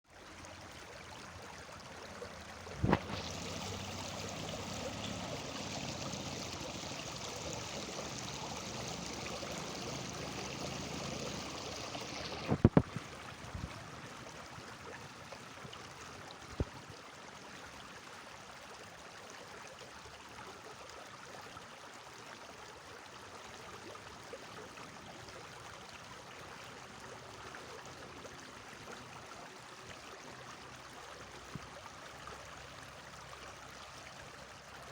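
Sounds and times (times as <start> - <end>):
stream water rushing: 0.2 - 19.6
bright rush of water: 2.1 - 18.0.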